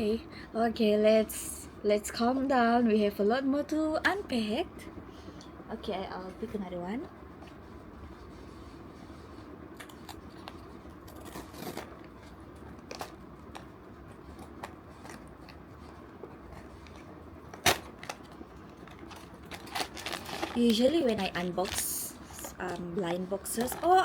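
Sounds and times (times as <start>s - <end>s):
packaging rustling: 9.8s - 24.0s
packaging clicks: 16.8s - 24.0s.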